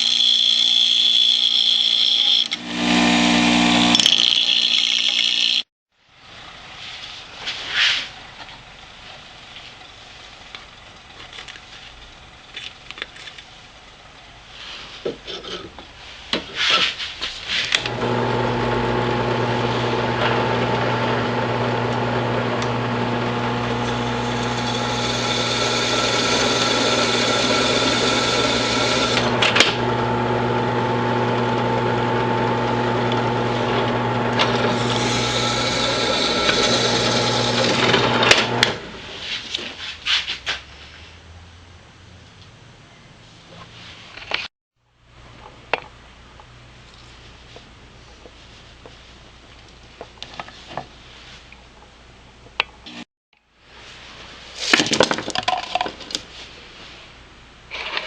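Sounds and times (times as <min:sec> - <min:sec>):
power tool cutting: 0:00.0 - 0:05.7, 0:17.8 - 0:38.9.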